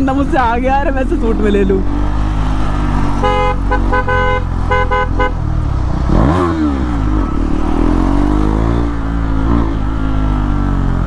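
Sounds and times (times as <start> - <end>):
motorcycle engine revving: 0.0 - 11.0
vehicle horn short beeps: 3.2 - 5.4.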